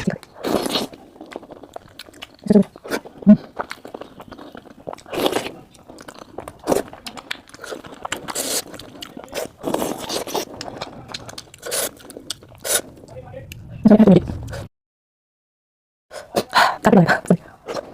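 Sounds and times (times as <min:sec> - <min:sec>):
wet mouth sounds: 0:00.0 - 0:14.7
person chewing: 0:00.2 - 0:13.7, 0:14.3 - 0:14.7.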